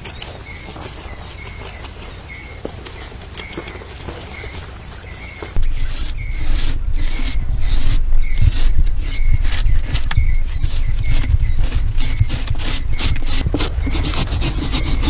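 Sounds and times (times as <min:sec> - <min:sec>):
scraping strokes: 0:00.0 - 0:15.0
low rumble: 0:05.6 - 0:13.6.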